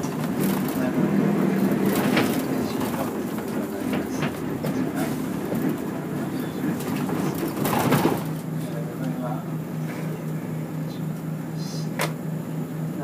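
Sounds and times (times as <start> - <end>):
bus diesel engine running: 0.0 - 13.0
road noise: 0.0 - 13.0
cabin rattles and knocks: 6.6 - 8.4.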